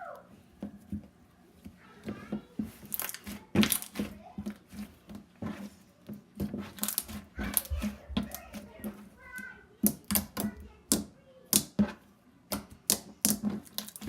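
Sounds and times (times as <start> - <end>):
slime squished sticky pops: 12.5 - 14.0.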